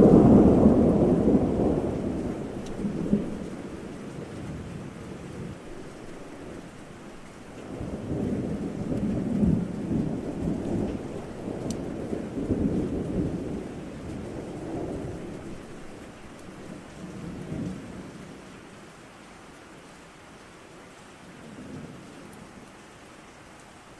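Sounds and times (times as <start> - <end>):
rolling thunder rumble: 0.0 - 18.5
steady rain: 0.0 - 23.9.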